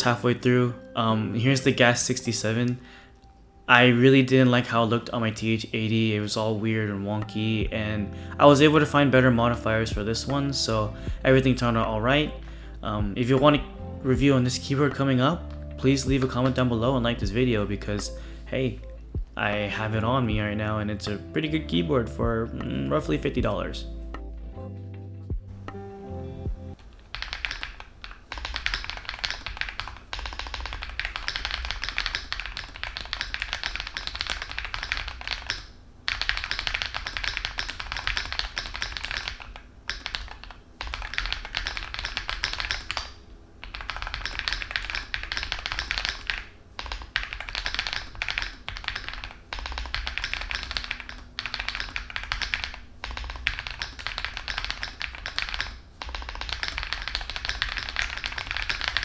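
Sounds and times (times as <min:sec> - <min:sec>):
fast typing on mechanical keyboard: 0:27.0 - 0:59.0.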